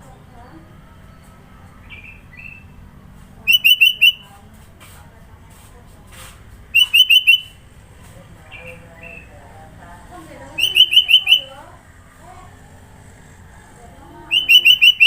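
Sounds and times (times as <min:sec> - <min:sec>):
bird calling clear notes: 0:01.2 - 0:02.8, 0:03.4 - 0:04.4, 0:06.7 - 0:07.6, 0:08.5 - 0:09.3, 0:10.5 - 0:11.7, 0:14.3 - 0:15.0.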